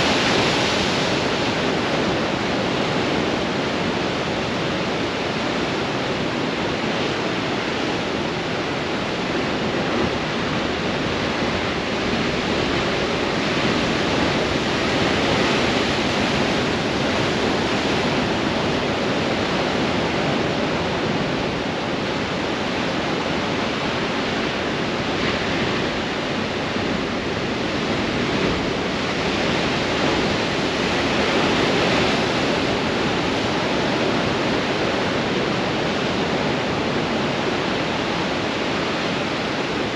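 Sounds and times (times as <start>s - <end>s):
strong wind: 0.0s - 39.9s
ocean waves breaking on rocks: 8.9s - 39.9s.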